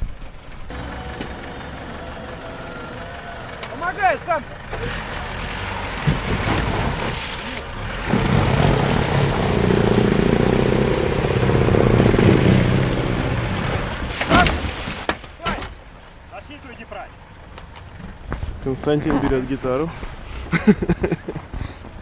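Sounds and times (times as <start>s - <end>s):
pickup truck engine revving: 0.7s - 3.8s, 4.6s - 14.2s.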